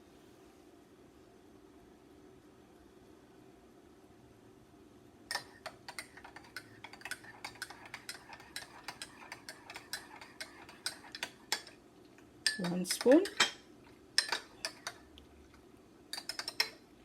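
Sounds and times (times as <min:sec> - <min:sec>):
spoon clinking against cup: 0:05.3 - 0:11.8, 0:12.5 - 0:15.0, 0:16.1 - 0:16.8.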